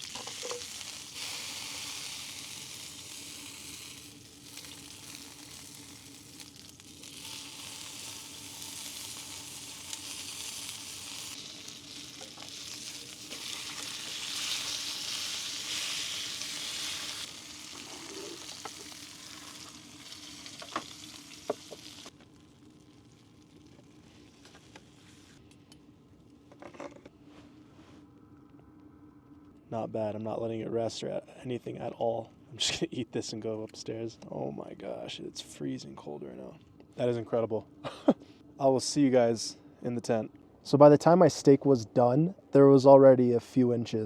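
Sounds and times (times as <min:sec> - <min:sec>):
steak sizzling in a frying pan: 0:00.0 - 0:23.7.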